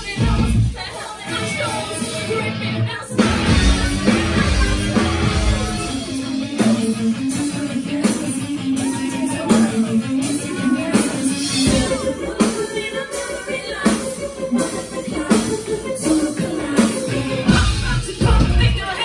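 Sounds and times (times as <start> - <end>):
heavy bass: 0.0 - 0.8, 1.4 - 12.2, 17.1 - 19.0
drums: 0.0 - 19.0
person singing: 0.0 - 19.0
electric guitar riff: 2.0 - 12.0.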